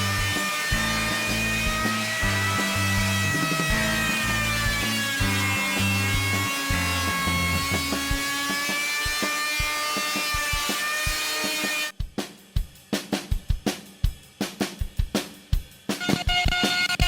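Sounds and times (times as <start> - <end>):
rock music: 0.0 - 8.4
drum hits: 0.0 - 13.8.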